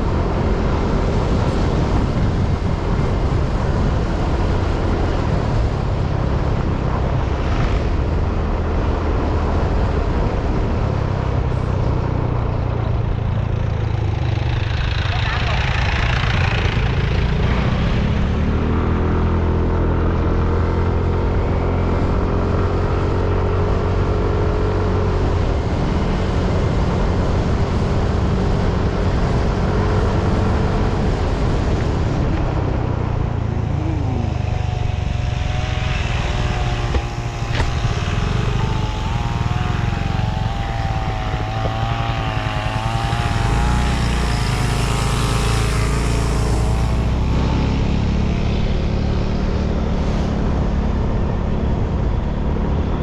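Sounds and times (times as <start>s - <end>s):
vehicle engine humming: 0.0s - 53.0s
wavering whine: 31.8s - 49.6s.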